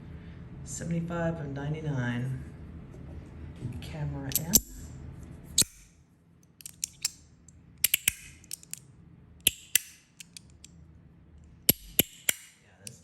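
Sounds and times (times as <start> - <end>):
fidget clicker metallic clicks: 4.3 - 4.8, 6.6 - 7.2, 7.8 - 8.8, 9.5 - 10.7, 11.7 - 13.0.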